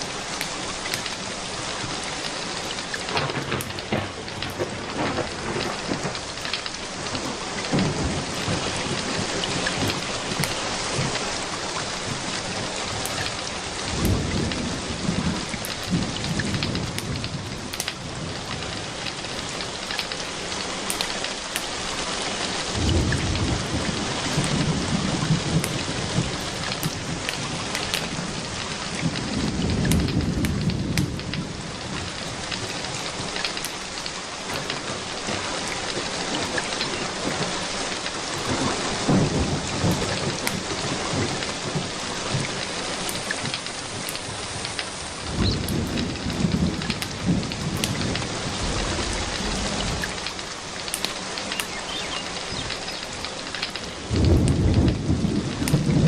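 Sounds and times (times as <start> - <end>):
small sharp crackles: 0.0 - 6.8, 9.7 - 11.2, 13.0 - 14.6, 15.5 - 18.0, 18.9 - 22.1, 25.6 - 28.2, 29.9 - 31.4, 32.0 - 35.0, 42.4 - 48.3, 49.3 - 55.0
low thunder rumbles: 0.0 - 56.0
steady rain: 0.0 - 56.0.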